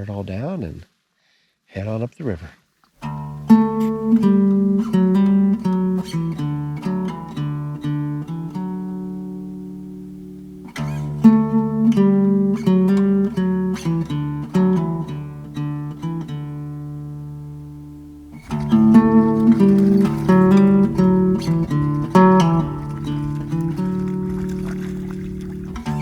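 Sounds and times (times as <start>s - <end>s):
acoustic guitar picking: 3.0s - 26.0s.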